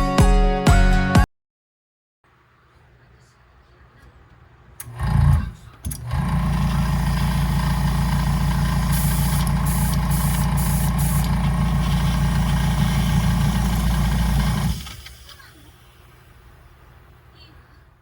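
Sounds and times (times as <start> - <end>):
air compressor motor humming: 4.8 - 16.6
air hissing bursts: 5.9 - 16.2.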